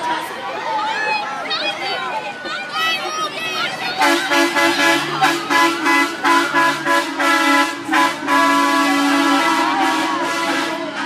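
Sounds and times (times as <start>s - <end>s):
bus horns honking: 3.1s - 11.0s.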